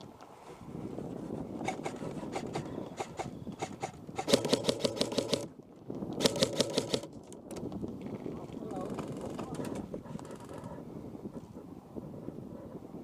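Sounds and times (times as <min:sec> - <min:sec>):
airsoft gun firing: 0:03.0 - 0:05.5.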